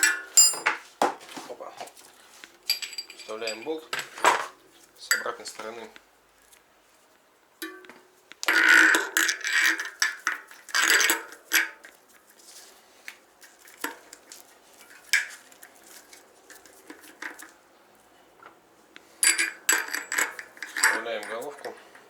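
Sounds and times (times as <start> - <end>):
metal parts clinking and scraping: 0.0 - 0.8, 2.6 - 5.8, 19.1 - 22.0.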